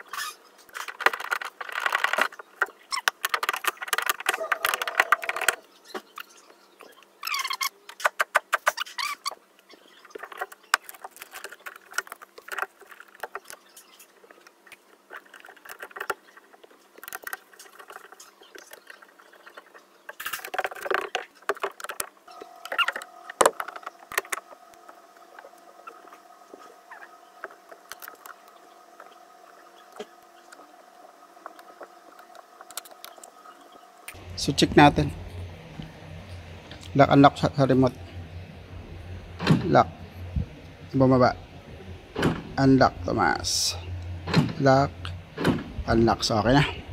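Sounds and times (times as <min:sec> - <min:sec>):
faint steady hum: 0:21.2 - 0:46.9.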